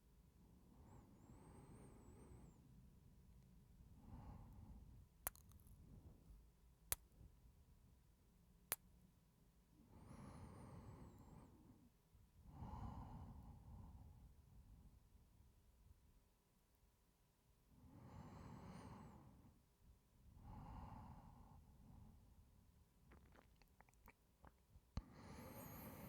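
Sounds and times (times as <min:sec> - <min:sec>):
mouth clicks: 0:05.3 - 0:05.7, 0:23.1 - 0:24.6.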